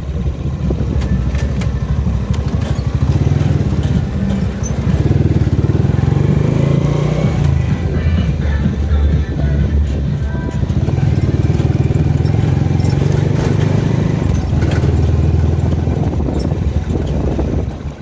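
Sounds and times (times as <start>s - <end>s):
motorcycle engine running: 0.0s - 18.0s.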